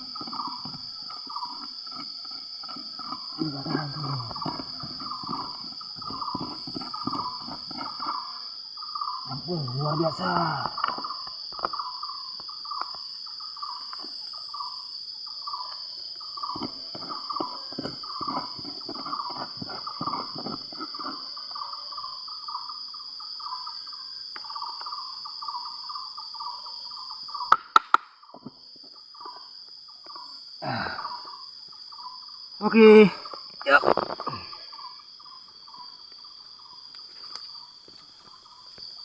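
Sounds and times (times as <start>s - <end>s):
rough knocks and scrapes: 0.0s - 8.4s, 16.4s - 21.6s
high insect drone: 0.0s - 39.0s.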